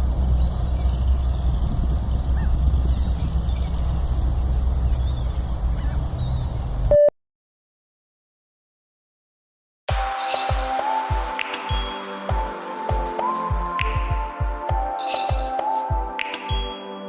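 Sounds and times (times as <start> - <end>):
wind rumble on microphone: 0.0 - 6.9
geese honking: 2.2 - 4.0.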